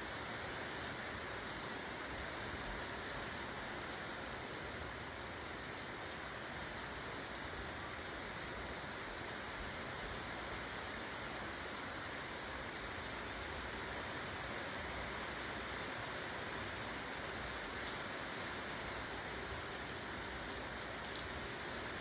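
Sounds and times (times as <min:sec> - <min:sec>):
steady rain hiss: 0:00.0 - 0:22.0
raindrop ticks: 0:00.1 - 0:02.4, 0:05.4 - 0:11.8, 0:12.4 - 0:19.0, 0:20.7 - 0:21.3.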